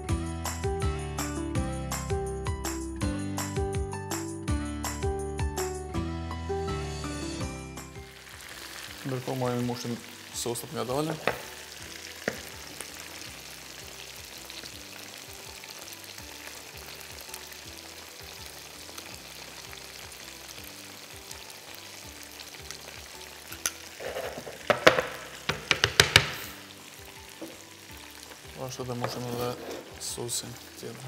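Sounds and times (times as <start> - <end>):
faint background music: 6.7 - 31.0
chicken frying in oil: 8.0 - 31.0
sharp clicks and knocks: 24.7 - 26.4.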